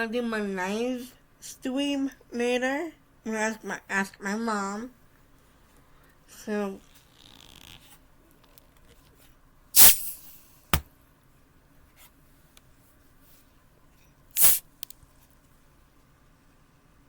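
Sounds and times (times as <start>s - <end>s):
cans cracked open hissing: 9.8s - 10.3s, 14.4s - 14.6s
click: 14.8s - 15.0s.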